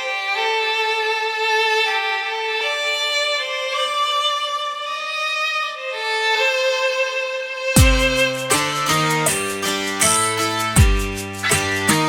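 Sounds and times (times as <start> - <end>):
slow violin melody: 0.0 - 12.0
deep bass hit: 7.8 - 8.4, 10.8 - 11.3
chordal accompaniment: 7.8 - 12.0.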